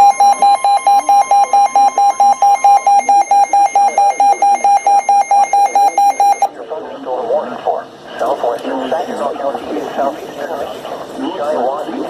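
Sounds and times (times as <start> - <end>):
rapid electronic beeping: 0.0 - 6.5.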